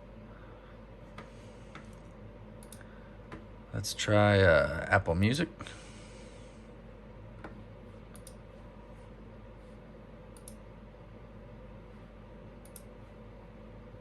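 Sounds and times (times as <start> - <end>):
low steady hum: 0.0 - 14.0
computer mouse clicks: 2.6 - 3.4, 7.4 - 8.4, 10.3 - 10.6, 12.6 - 12.9.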